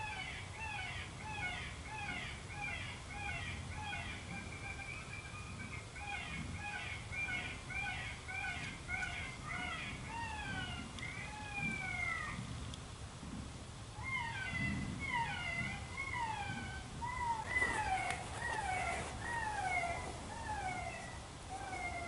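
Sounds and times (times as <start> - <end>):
electronic predator call cries: 14.0 - 22.0.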